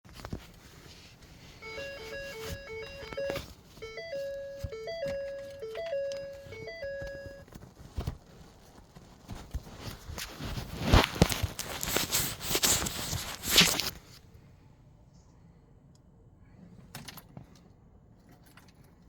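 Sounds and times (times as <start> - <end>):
electronic beeping jingle: 1.6 - 7.4.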